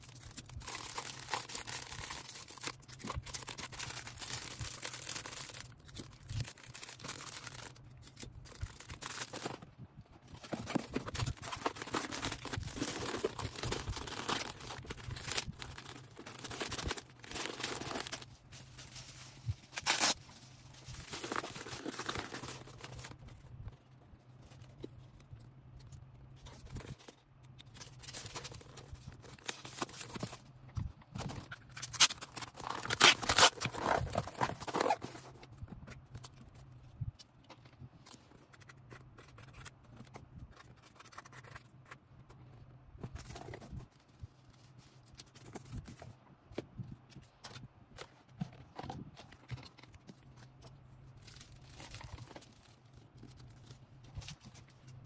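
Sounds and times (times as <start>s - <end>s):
packaging crinkling and rustling: 0.0s - 23.5s, 26.4s - 36.7s, 47.4s - 55.0s
low steady hum: 0.0s - 55.0s.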